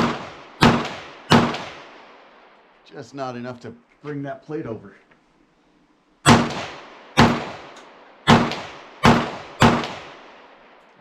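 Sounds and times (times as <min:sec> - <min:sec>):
pistol shots echoing: 0:00.0 - 0:02.3, 0:06.2 - 0:10.7.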